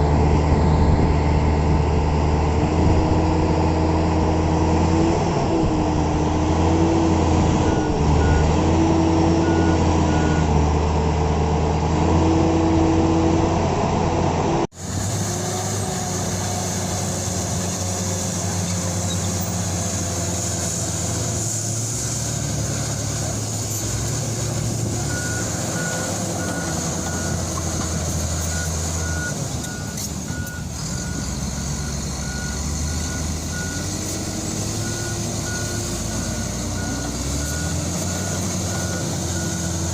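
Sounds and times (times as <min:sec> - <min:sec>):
bulldozer diesel engine running: 0:00.0 - 0:39.9
reversing alarm beeping: 0:07.6 - 0:08.6, 0:09.4 - 0:10.5, 0:25.0 - 0:39.9.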